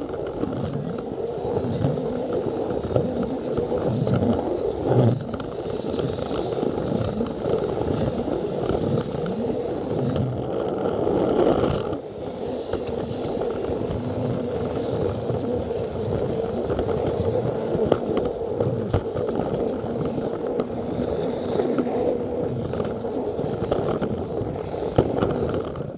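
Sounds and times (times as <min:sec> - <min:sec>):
toy train rolling on track: 0:00.0 - 0:25.8
clicks over rail joints: 0:12.6 - 0:25.9.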